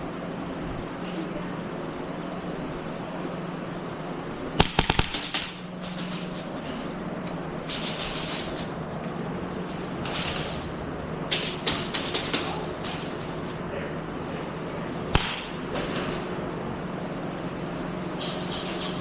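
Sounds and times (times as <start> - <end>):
airsoft gun shots: 4.6 - 6.2, 15.1 - 15.7.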